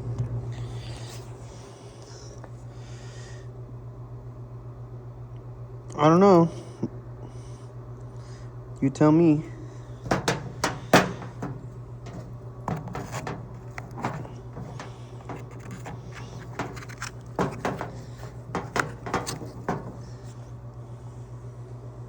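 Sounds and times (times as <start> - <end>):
steady low hum: 9.5 - 21.3
tools clicking and knocking: 10.1 - 20.3.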